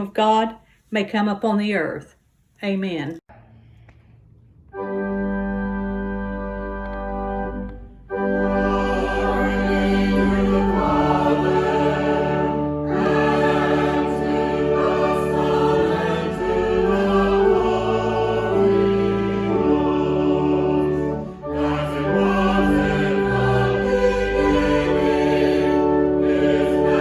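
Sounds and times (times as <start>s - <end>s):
sustained organ chord: 4.7s - 27.0s
choir singing with keyboard: 4.8s - 27.0s.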